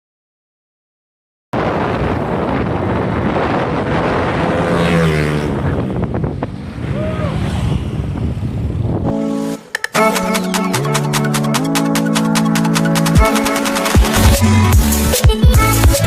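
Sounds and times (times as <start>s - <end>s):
wind buffeting microphone: 1.6s - 9.3s.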